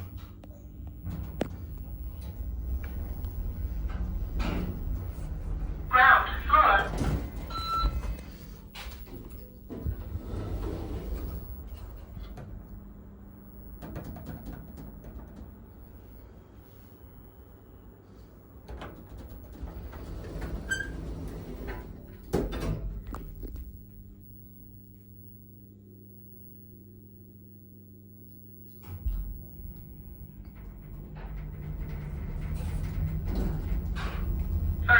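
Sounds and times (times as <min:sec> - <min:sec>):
lift machinery hum: 0:00.0 - 0:34.9
lift doors knocking and sliding: 0:00.8 - 0:12.8, 0:18.6 - 0:23.6, 0:29.0 - 0:34.9.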